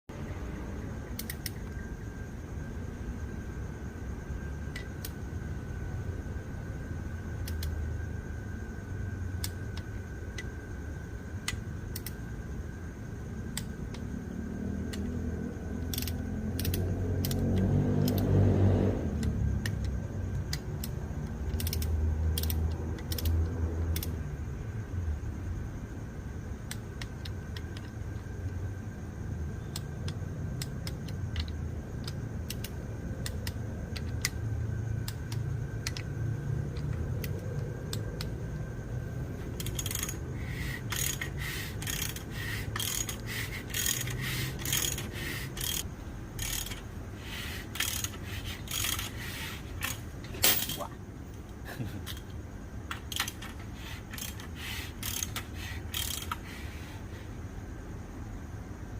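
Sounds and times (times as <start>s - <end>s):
metal tools clinking: 49.8s - 50.9s.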